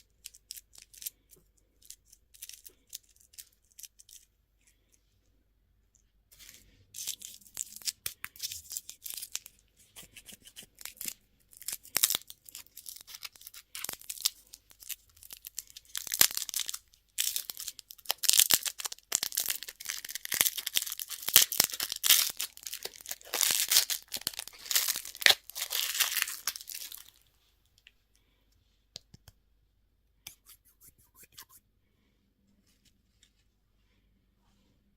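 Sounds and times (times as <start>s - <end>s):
candy wrapper tearing and crinkling: 0.0s - 4.3s, 6.4s - 27.2s.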